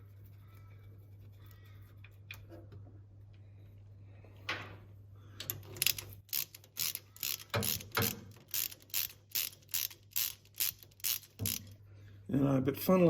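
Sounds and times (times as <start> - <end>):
ratchet clicking: 5.5 - 11.8.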